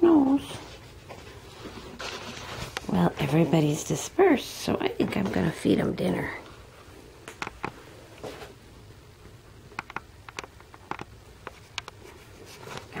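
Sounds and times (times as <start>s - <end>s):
light clicks and taps: 9.7s - 12.9s.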